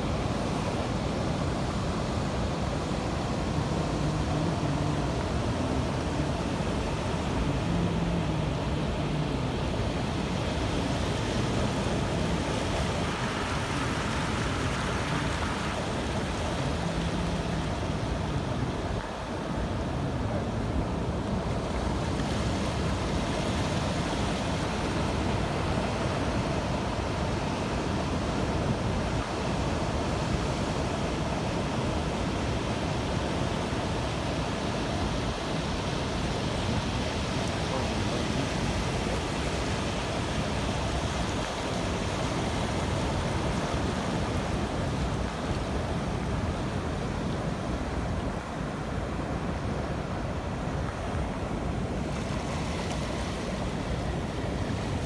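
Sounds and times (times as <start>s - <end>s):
sea waves rushing: 0.0s - 55.0s.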